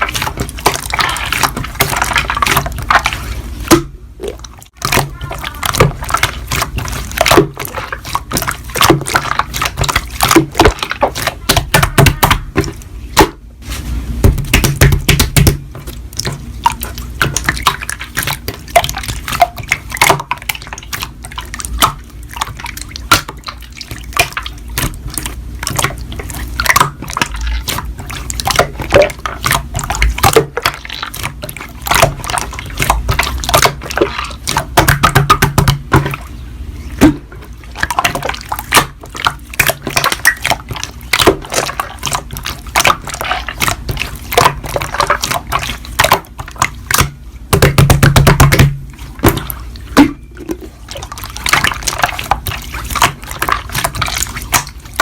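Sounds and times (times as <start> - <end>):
slime squishing and popping: 37.0 - 55.0.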